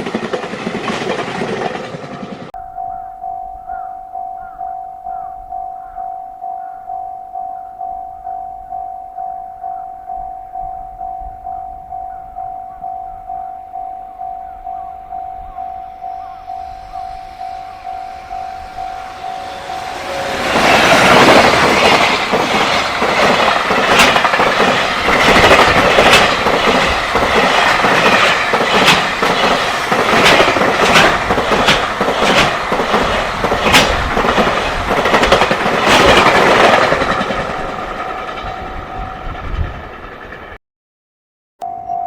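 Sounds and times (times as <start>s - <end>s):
freight train wheels clacking: 0.0s - 2.5s, 17.4s - 40.6s
level crossing alarm ringing: 2.2s - 33.5s.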